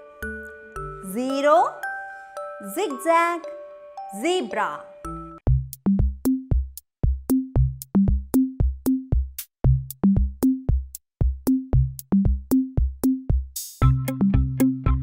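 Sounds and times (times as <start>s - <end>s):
drum machine beat: 5.4s - 15.0s.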